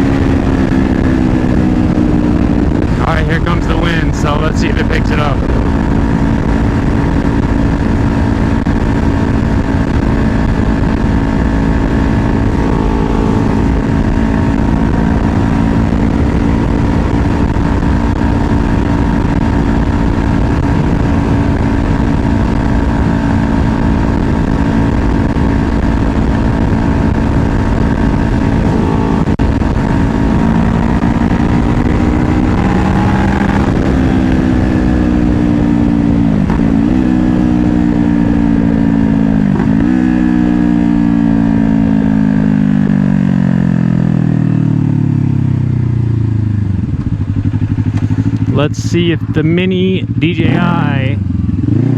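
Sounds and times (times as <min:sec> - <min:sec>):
wind rush on microphone: 0:00.0 - 0:40.8
motorcycle engine running: 0:00.0 - 0:51.9.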